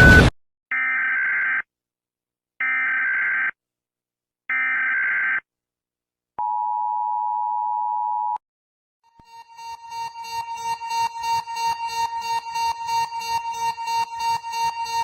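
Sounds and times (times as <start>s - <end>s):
harsh electronic warble bursts: 9.2s - 15.0s
steady alert attention tone: 9.2s - 15.0s.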